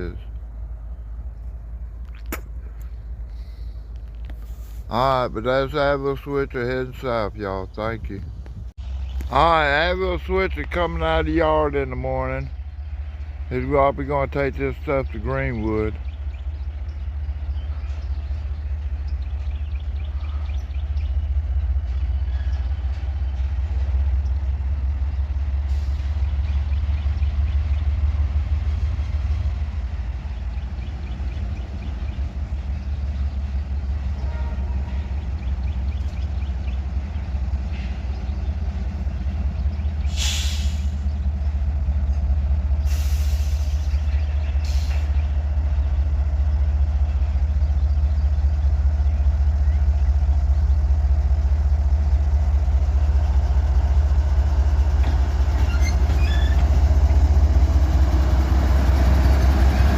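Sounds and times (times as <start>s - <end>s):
diesel locomotive rumbling: 0.0s - 59.9s
air brakes hissing: 25.6s - 26.3s, 40.0s - 41.1s, 42.8s - 45.2s.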